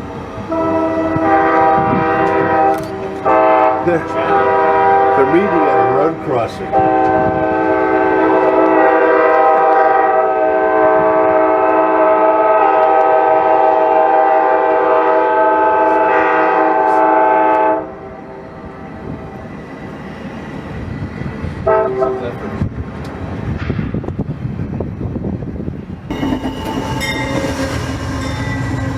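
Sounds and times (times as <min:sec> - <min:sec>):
train running noise: 0:00.0 - 0:28.9
locomotive air horn chord: 0:00.4 - 0:19.0, 0:21.6 - 0:22.4.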